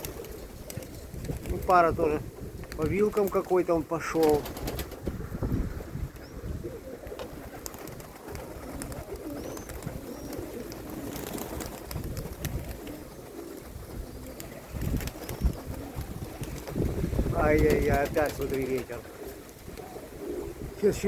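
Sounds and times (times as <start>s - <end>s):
pigeons cooing: 0.0s - 21.0s
wind buffeting microphone: 0.0s - 21.0s.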